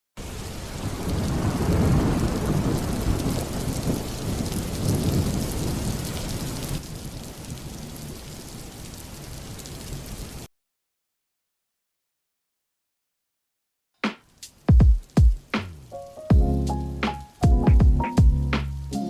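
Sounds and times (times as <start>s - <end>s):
heavy rain: 0.2s - 10.5s, 14.3s - 19.0s
rolling thunder: 0.3s - 8.2s.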